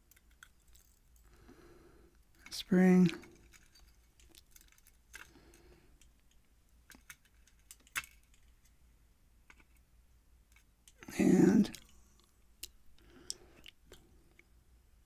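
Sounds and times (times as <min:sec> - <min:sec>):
small metal lock parts clicking: 0:00.0 - 0:01.3, 0:02.3 - 0:08.6.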